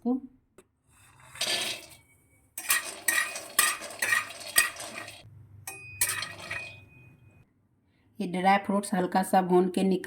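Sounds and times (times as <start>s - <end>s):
metal spatula scraping nuts: 2.6s - 5.3s, 6.0s - 6.9s
sharp metallic clink: 5.7s - 7.1s.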